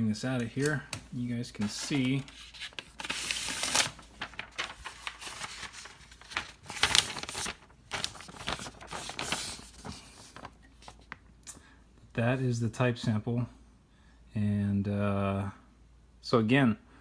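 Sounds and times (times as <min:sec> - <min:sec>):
paper rustling and scraping: 0:00.4 - 0:11.2.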